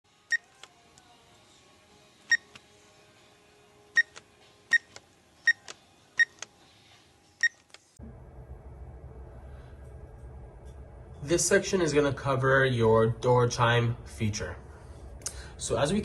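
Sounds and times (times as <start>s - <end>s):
keypad beeps: 2.3s - 2.6s, 4.0s - 6.5s, 7.4s - 7.7s
steady low hum: 8.0s - 16.0s.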